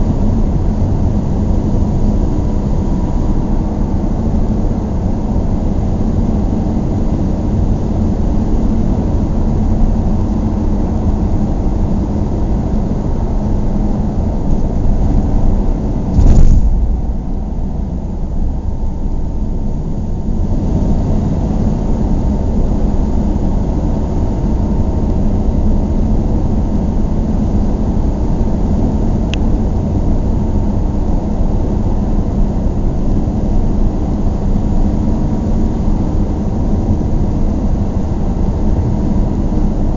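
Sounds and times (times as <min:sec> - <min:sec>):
road and engine rumble: 0:00.0 - 0:39.9
loud thump: 0:16.1 - 0:18.6.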